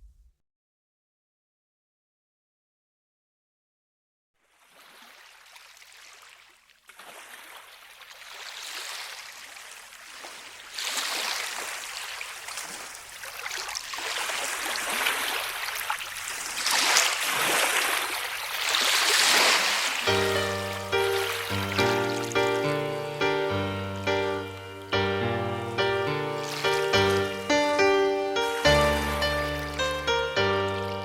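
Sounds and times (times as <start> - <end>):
running water rushing: 7.5 - 31.0.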